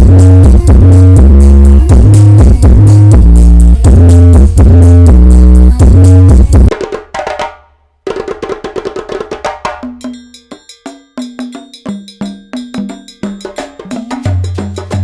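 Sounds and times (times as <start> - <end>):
heavy-bass electronic music: 0.0 - 6.7
percussion music with wood-block clicks: 6.6 - 15.0.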